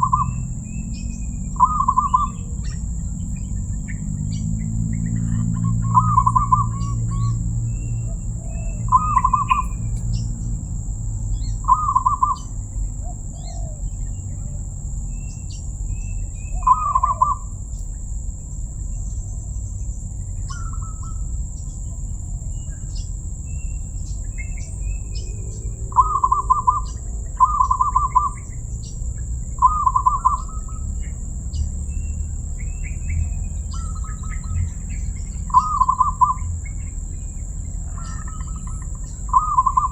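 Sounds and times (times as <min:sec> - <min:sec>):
dove cooing: 0:00.0 - 0:03.5, 0:05.0 - 0:10.6, 0:11.5 - 0:14.6, 0:16.5 - 0:17.6, 0:25.8 - 0:28.7, 0:29.5 - 0:30.9, 0:35.5 - 0:36.5, 0:37.8 - 0:39.9
small birds chirping: 0:00.0 - 0:39.9.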